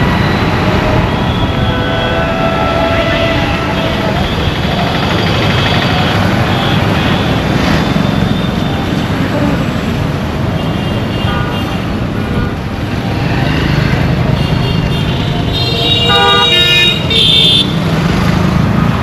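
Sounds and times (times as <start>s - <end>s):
road traffic rumble: 0.0s - 19.0s
vehicle horn toots: 1.0s - 4.4s, 14.4s - 17.8s.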